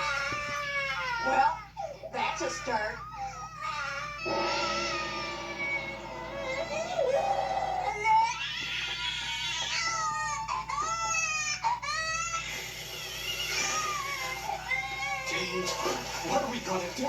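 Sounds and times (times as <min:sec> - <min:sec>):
cartoon baby crying: 0:02.6 - 0:15.7.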